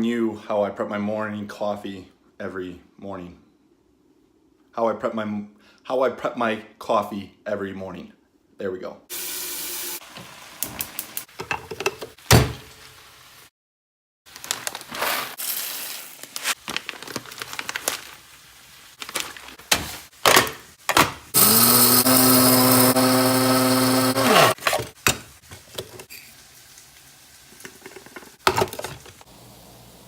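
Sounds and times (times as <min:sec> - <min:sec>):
kitchen clatter and knocks: 0:11.3 - 0:12.7, 0:19.7 - 0:21.3, 0:27.6 - 0:29.2
kitchen appliance motor running: 0:21.4 - 0:24.8.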